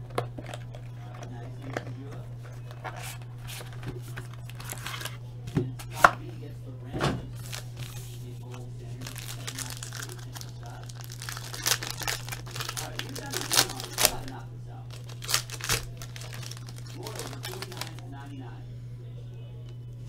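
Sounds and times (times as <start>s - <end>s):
wrappers crinkling and tearing: 0.0s - 5.2s, 7.4s - 8.2s, 8.9s - 18.2s.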